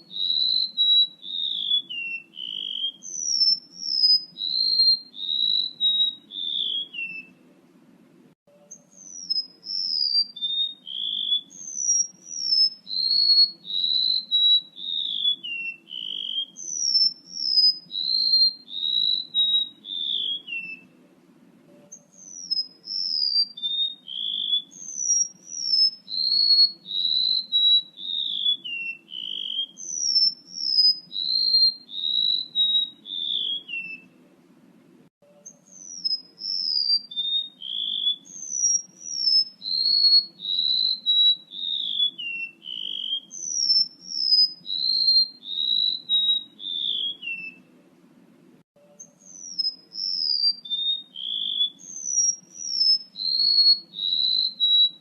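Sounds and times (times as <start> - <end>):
bird whistling descending notes: 0.0 - 7.4, 8.8 - 20.9, 21.9 - 34.1, 35.4 - 47.6, 49.2 - 55.0
low steady hum: 7.3 - 8.9, 20.8 - 22.1, 34.0 - 35.5.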